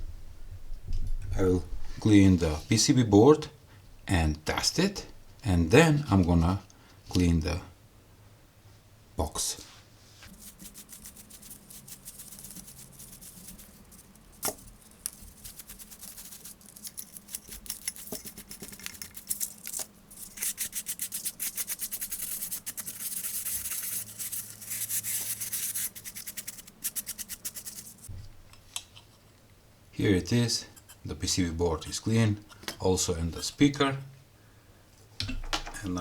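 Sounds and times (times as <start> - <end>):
brush scrubbing circuit board: 10.3 - 28.1, 30.7 - 31.1.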